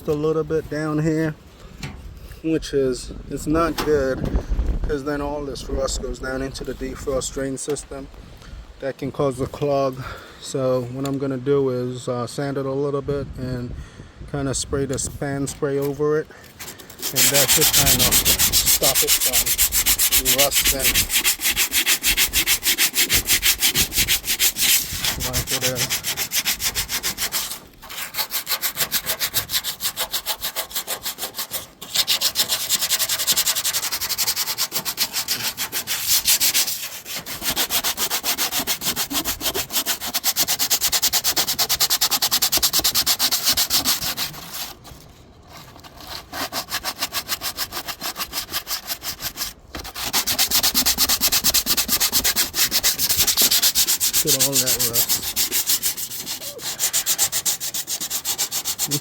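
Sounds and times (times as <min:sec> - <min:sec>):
sanding rust off metal: 0:15.6 - 0:59.0.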